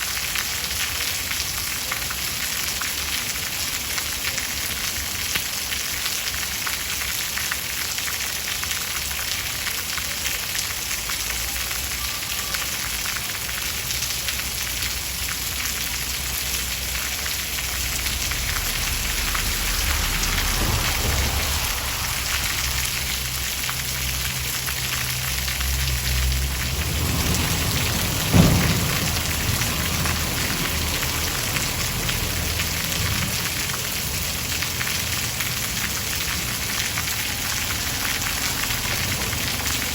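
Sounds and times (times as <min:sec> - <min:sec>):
steady rain falling: 0:00.0 - 0:39.9
thunder rumbling: 0:17.7 - 0:39.9
sharp thunderclap: 0:19.1 - 0:23.5, 0:26.5 - 0:31.3.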